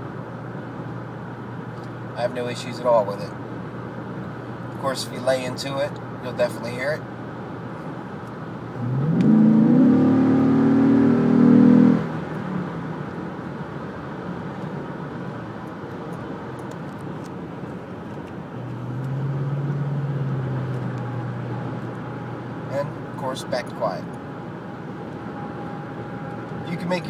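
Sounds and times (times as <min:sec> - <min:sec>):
road hum: 0:00.0 - 0:27.0
truck exhaust accelerating: 0:08.7 - 0:13.2, 0:17.7 - 0:27.0.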